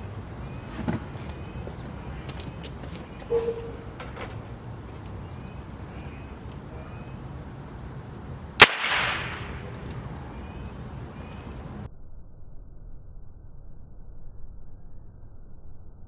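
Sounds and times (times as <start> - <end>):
sharp detonation snap: 8.6 - 9.9.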